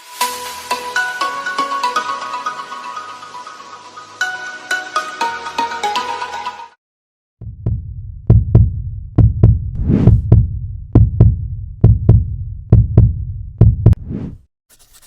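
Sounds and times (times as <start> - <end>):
deep booming thuds: 7.4 - 14.0.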